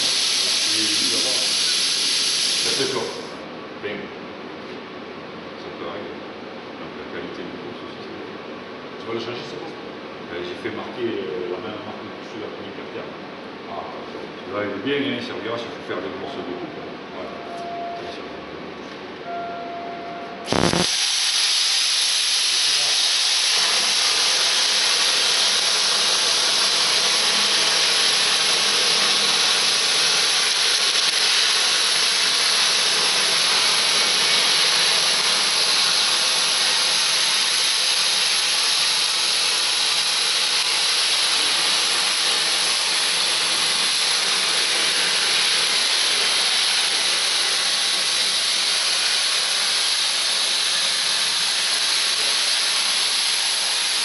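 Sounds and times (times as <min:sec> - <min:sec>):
plasma torch hissing: 0:00.0 - 0:03.4, 0:20.4 - 0:54.0.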